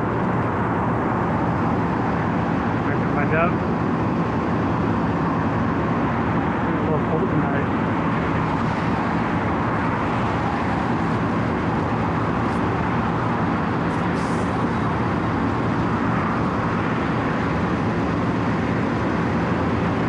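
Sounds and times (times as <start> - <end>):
diesel engine running: 0.0 - 20.0.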